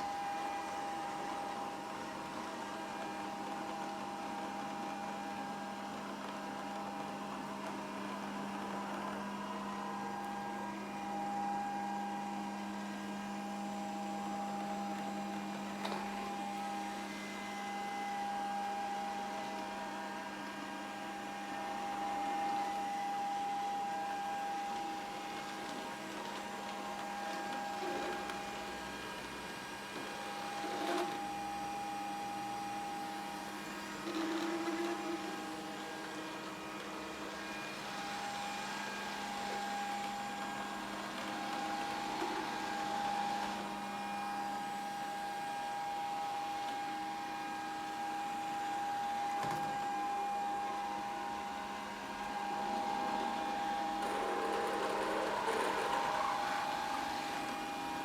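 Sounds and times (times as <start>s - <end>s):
robot vacuum motor whine: 0.0s - 58.0s.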